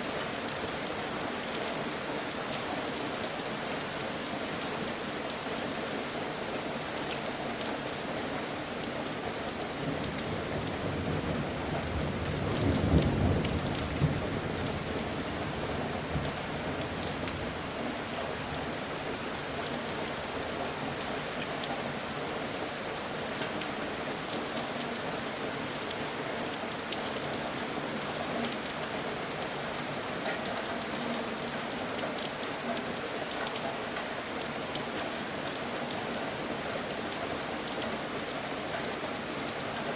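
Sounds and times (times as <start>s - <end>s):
steady rain falling: 0.0s - 39.9s
low rumble of thunder: 10.4s - 16.4s.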